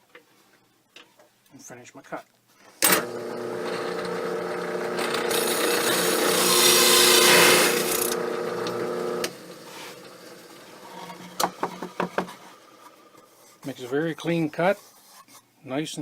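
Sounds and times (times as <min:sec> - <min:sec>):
hole saw cutting: 0:02.8 - 0:10.8.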